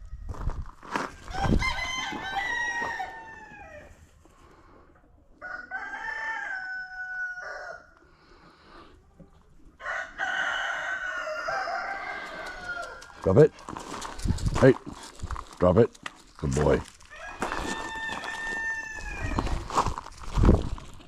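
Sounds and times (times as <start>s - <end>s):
rooster crowing: 1.3s - 3.9s, 5.4s - 7.9s, 9.8s - 13.2s, 17.1s - 19.6s.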